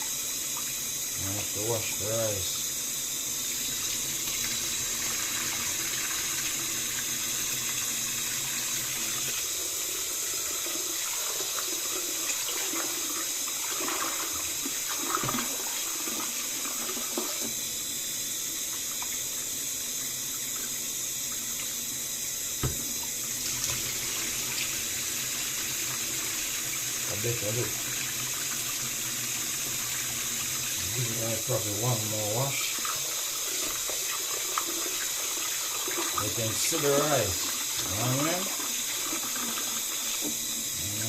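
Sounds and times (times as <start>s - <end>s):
rice being washed in water: 0.0s - 2.7s, 3.4s - 21.9s, 22.6s - 41.0s
kitchen tap running: 0.0s - 41.0s.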